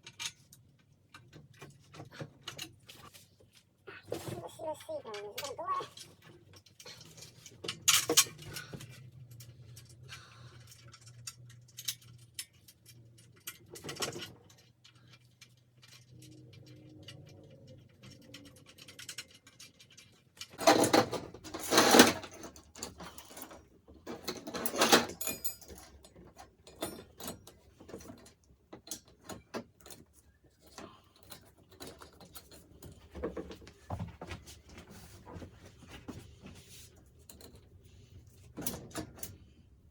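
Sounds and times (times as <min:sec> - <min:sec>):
metal tools clicking and scraping: 0:05.1 - 0:33.0.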